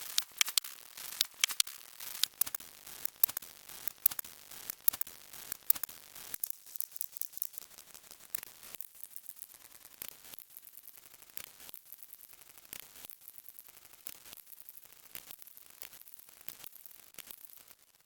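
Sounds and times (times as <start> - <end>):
sharp clicks and crackles: 0.0 - 7.8.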